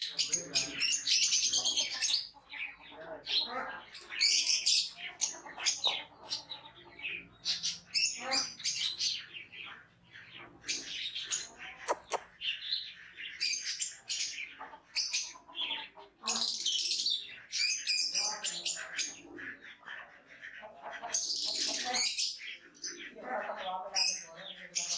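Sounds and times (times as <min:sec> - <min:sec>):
high-pitched chirping calls: 0:04.0 - 0:18.5.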